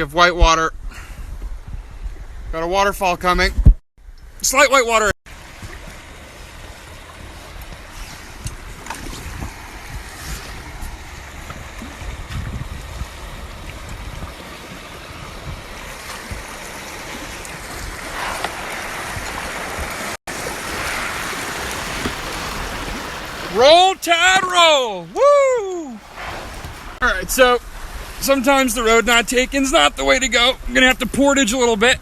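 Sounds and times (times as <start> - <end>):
wind buffeting microphone: 0.0 - 3.8, 5.4 - 32.0
knocks and splashes: 5.3 - 31.3
river rapids rushing: 15.8 - 27.0.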